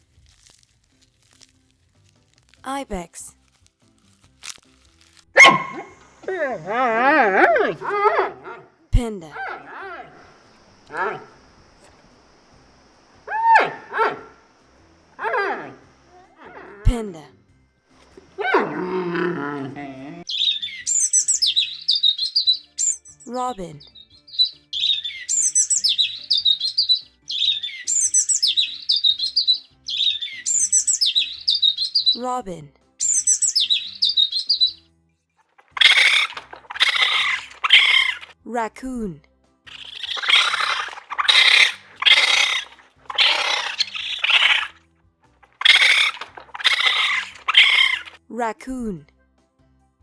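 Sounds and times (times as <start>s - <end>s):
robin singing: 5.4s - 7.9s, 9.0s - 16.1s, 18.1s - 34.8s, 35.6s - 39.1s, 39.7s - 44.7s, 45.5s - 49.0s
raccoon squealing: 5.4s - 8.6s, 9.2s - 12.2s, 13.2s - 14.5s, 15.1s - 17.2s, 18.1s - 32.4s, 33.0s - 34.8s, 35.6s - 38.4s, 39.7s - 44.8s, 45.4s - 48.2s.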